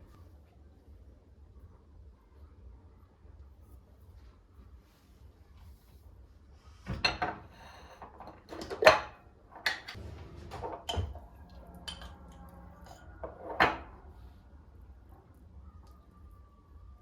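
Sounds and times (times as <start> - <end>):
dishes and utensils clinking: 6.9 - 14.2.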